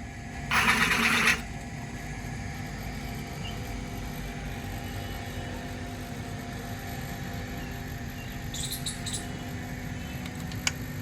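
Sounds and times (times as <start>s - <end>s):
mechanical drone: 0.0s - 1.5s
faint hum tones: 0.0s - 11.0s.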